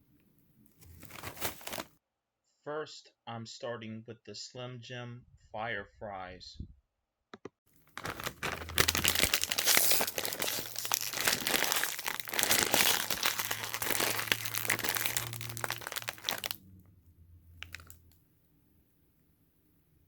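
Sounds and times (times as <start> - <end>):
snack bag crinkling: 0.8 - 2.0, 7.8 - 16.6, 17.6 - 18.1.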